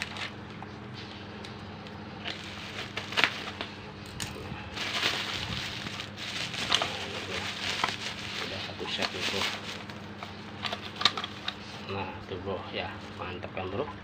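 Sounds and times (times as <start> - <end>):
plastic packaging crinkling: 0.0 - 0.4, 1.9 - 11.9.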